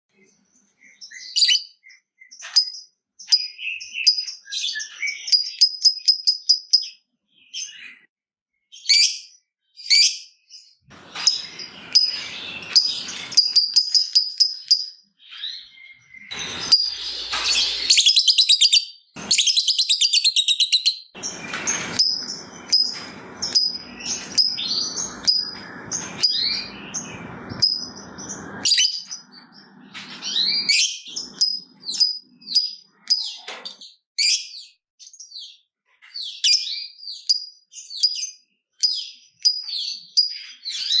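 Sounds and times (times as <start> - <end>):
lovebirds chirping: 8.8 - 33.5
bird trilling: 11.1 - 14.9, 16.3 - 32.2
bird chattering: 16.3 - 29.0.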